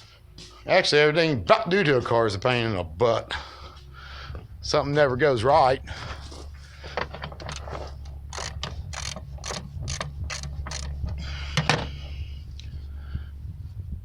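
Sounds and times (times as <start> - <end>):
hand ratchet clicking: 7.5 - 11.7.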